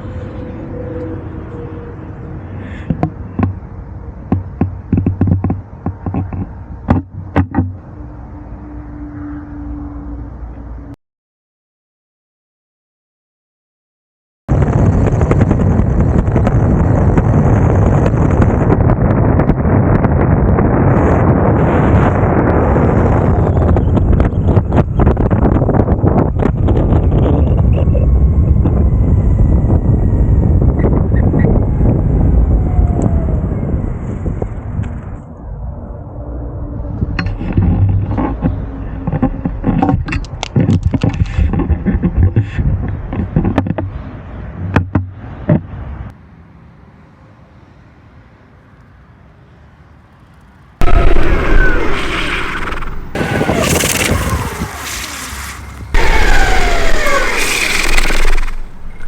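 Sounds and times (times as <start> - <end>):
sharp clicks from bumps: 2.8 - 7.9, 37.1 - 44.0, 52.0 - 59.0
wind buffeting microphone: 14.5 - 46.2, 50.6 - 59.0
skateboard wheels rolling on pavement: 46.1 - 59.0
electric motors whining: 50.8 - 59.0
low hum: 50.8 - 59.0.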